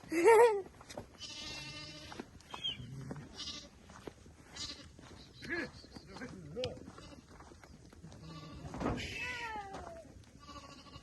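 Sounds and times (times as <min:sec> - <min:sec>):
sheep bleating: 0:01.2 - 0:02.2, 0:02.9 - 0:03.8, 0:04.5 - 0:11.0.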